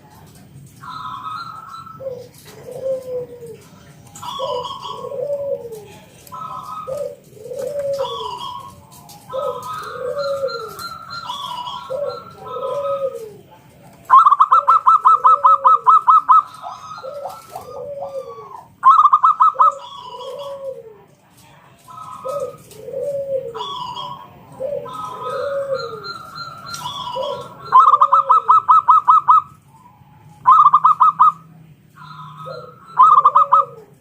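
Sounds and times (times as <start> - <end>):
doves cooing: 0.0 - 34.0
fast trilling bird call: 30.4 - 33.8.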